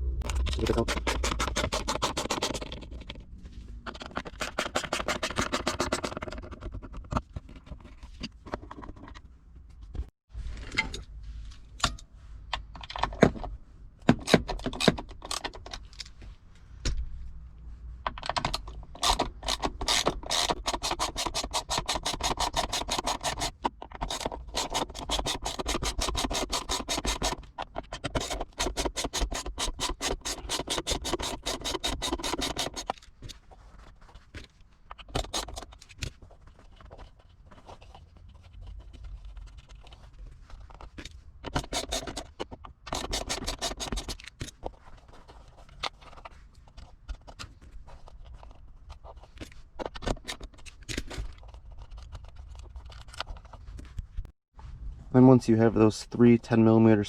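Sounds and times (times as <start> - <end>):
small scrapes: 18.9 - 55.0.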